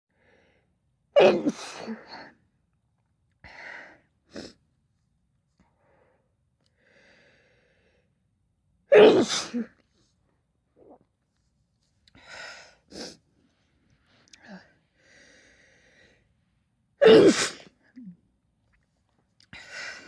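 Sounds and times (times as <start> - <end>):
woman sneezing: 1.2 - 2.2, 8.9 - 9.8, 17.0 - 17.7.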